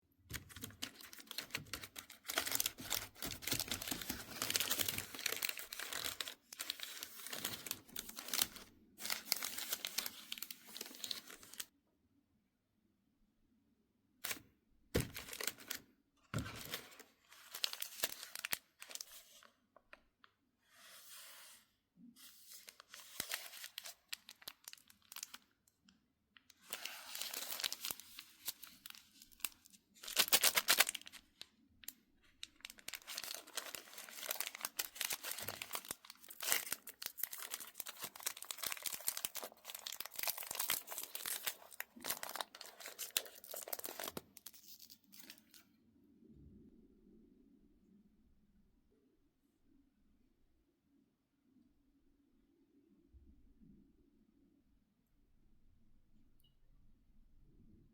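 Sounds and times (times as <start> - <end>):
plastic wrappers crinkling: 0.3 - 11.7, 15.0 - 15.8, 16.4 - 19.5, 22.5 - 25.5, 26.5 - 31.4, 32.3 - 45.6.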